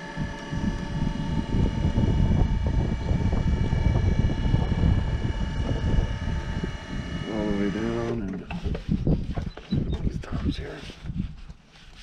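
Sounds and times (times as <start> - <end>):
portable sawmill running: 0.0 - 9.8.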